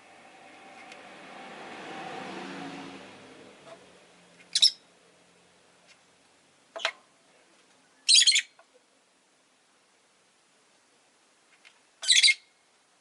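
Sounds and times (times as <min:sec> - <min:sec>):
lovebird shrill chirps: 0:04.5 - 0:04.8, 0:08.0 - 0:08.6, 0:12.0 - 0:12.5.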